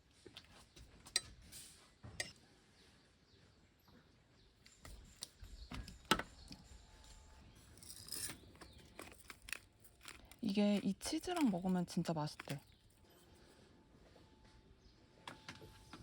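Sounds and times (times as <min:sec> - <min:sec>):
small objects clicking and knocking: 0:07.7 - 0:13.0.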